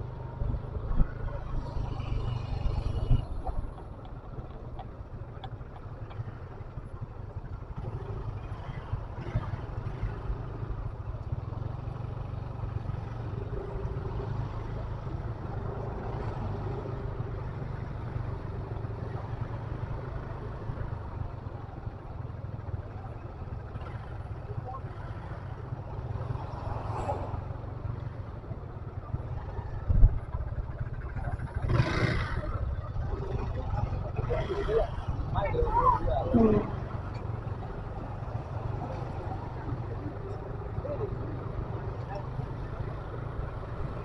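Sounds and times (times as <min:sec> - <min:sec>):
vehicle engine rumble: 0:00.0 - 0:44.0.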